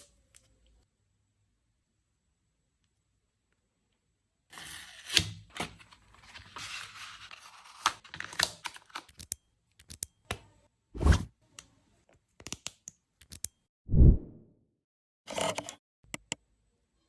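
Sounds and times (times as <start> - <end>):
sharp clicks and snaps: 12.4 - 13.6.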